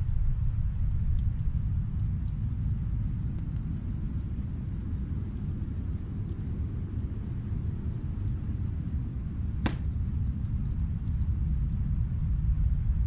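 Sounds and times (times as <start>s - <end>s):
deep rumble of wind: 0.0s - 13.0s
wood fire crackling: 0.0s - 13.0s
sharp fire pop: 9.6s - 10.0s.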